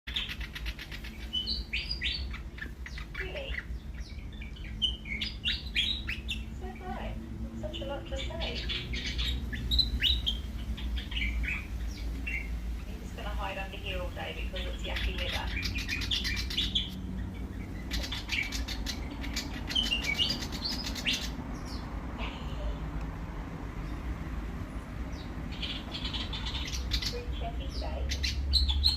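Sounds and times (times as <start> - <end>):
bird singing chirps and whistles: 0.1 - 6.5, 17.7 - 21.9, 25.6 - 28.9
bird chirping: 0.1 - 28.9
rapid ticking bird chatter: 0.1 - 28.9
steady low rumble: 0.1 - 28.9.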